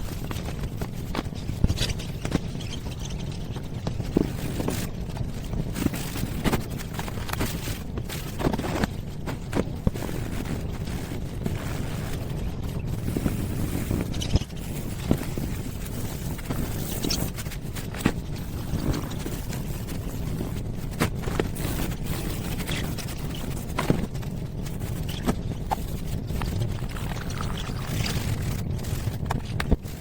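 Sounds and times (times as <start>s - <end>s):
low rumble: 18.0s - 30.0s.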